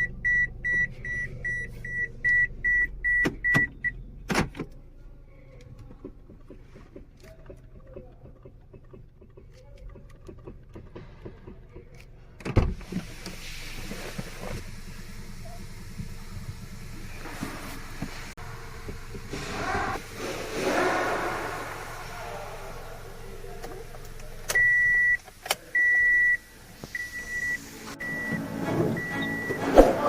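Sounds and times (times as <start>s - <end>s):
car warning chime beeping: 0.0s - 4.0s, 24.5s - 30.0s.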